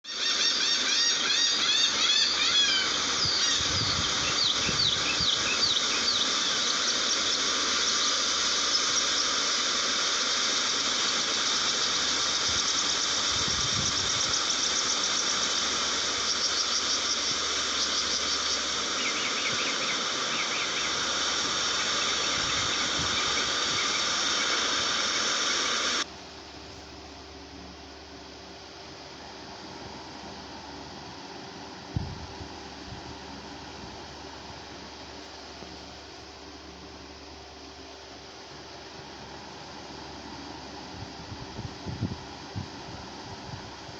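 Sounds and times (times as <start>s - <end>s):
flock of gulls calling: 0.0s - 9.1s
faint hiss: 0.1s - 43.9s.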